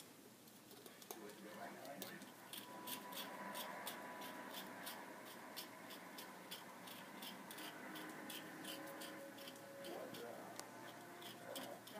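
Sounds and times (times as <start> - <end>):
faint steady ticking: 0.0 - 11.9
low room noise: 0.0 - 11.9.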